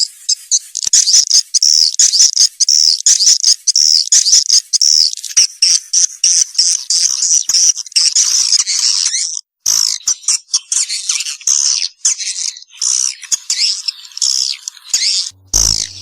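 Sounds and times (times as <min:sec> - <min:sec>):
swiftlet chirps and twitters: 0:15.3 - 0:16.0.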